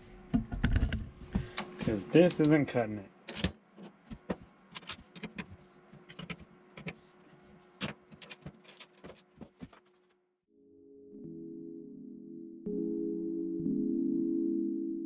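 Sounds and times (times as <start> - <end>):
faint steady hum: 0.0 - 10.0
clicks and knocks of tools: 3.3 - 9.8.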